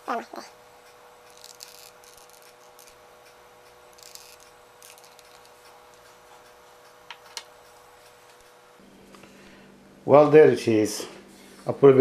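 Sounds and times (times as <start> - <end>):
faint steady hum: 0.0 - 12.0
small hard parts clicking and tapping: 0.8 - 8.6.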